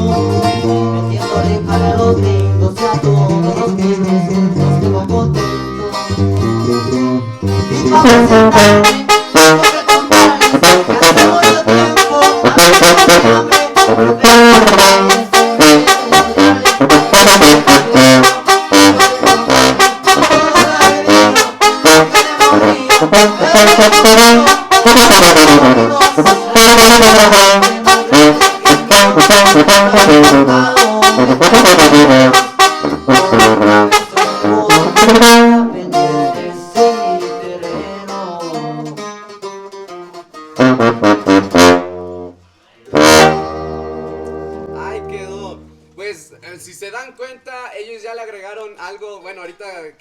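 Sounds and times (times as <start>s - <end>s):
band with tuba and saxophone: 0.0s - 46.0s.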